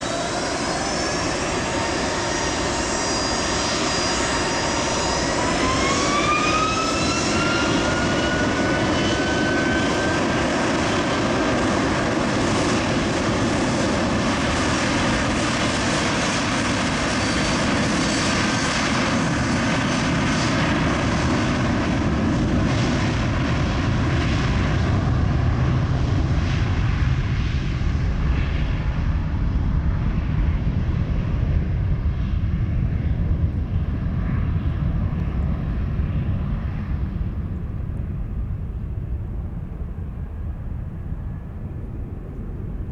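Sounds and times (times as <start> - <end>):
jet engines spooling up: 0.0 - 25.2.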